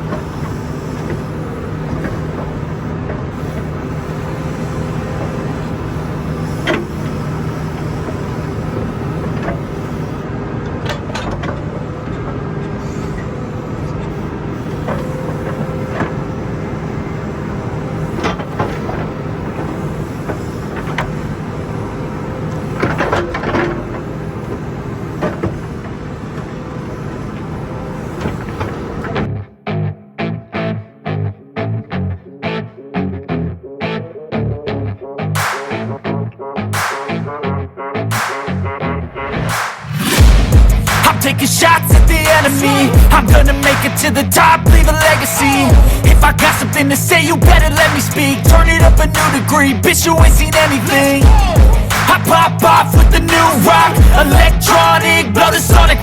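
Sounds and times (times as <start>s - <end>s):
backhoe loader engine running: 0.0s - 29.4s, 34.7s - 56.0s
sharp knocks and clanks: 39.5s - 44.1s.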